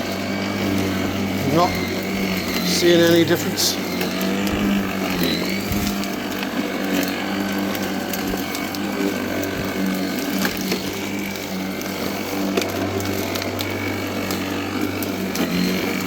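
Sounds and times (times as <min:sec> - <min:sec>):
electric lawnmower humming: 0:00.0 - 0:16.0
clicks and ticks of cutting grass: 0:00.4 - 0:16.0.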